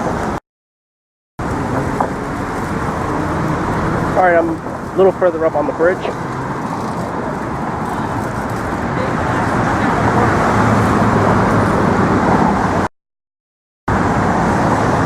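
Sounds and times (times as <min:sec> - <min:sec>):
road traffic noise: 0:00.0 - 0:00.4, 0:01.4 - 0:12.9, 0:13.9 - 0:15.0.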